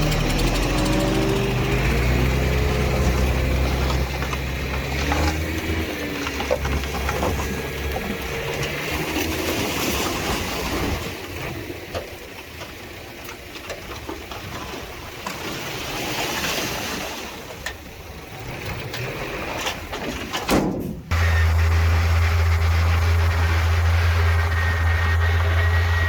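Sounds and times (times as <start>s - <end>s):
heavy machinery engine running: 0.0s - 11.1s, 21.1s - 26.0s.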